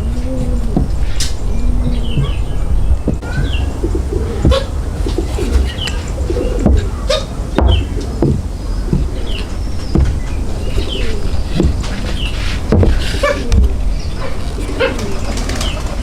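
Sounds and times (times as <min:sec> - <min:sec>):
steady low rumble: 0:00.0 - 0:15.3
birds calling: 0:00.0 - 0:16.0
sharp knocks: 0:06.6 - 0:13.8.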